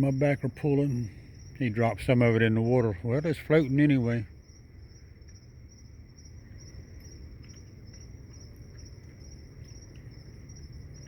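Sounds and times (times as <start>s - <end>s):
crickets chirping: 0.0s - 11.0s
low steady hum: 0.0s - 11.0s
faint ticks: 5.2s - 5.5s, 6.6s - 11.0s.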